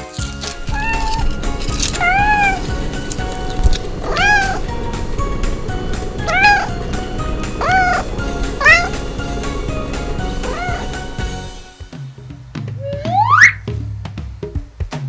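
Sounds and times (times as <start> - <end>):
background music with beat: 0.0 - 15.0
cat meowing: 0.7 - 1.3, 1.9 - 2.7, 4.0 - 4.7, 6.2 - 6.7, 7.6 - 8.0, 10.4 - 11.0.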